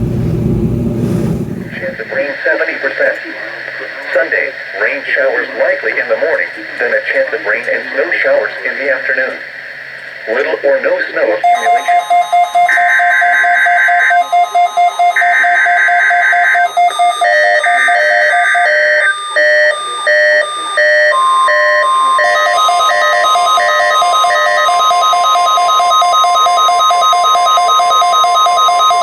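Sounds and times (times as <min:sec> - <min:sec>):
steady warning alarm tone: 0:01.7 - 0:29.0
electronic beep patterns: 0:11.4 - 0:29.0.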